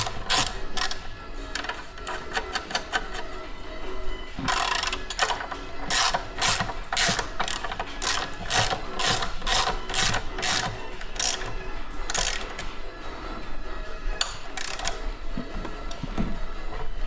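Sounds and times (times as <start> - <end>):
ratchet wrench clicking: 4.5 - 11.5, 14.2 - 15.0.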